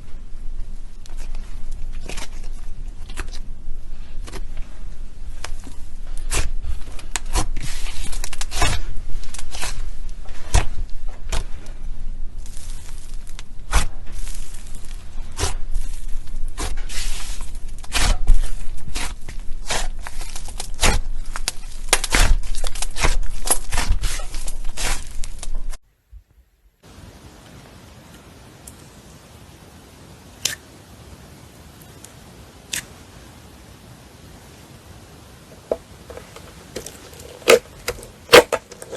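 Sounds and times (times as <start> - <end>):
slime being squished by hand: 5.4 - 11.7, 12.4 - 25.6.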